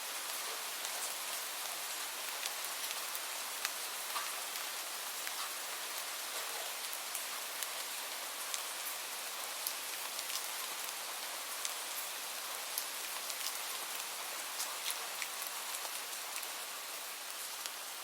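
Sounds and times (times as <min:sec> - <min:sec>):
light rain hissing: 0:00.0 - 0:18.0
raindrops ticking on hard surface: 0:02.4 - 0:05.6.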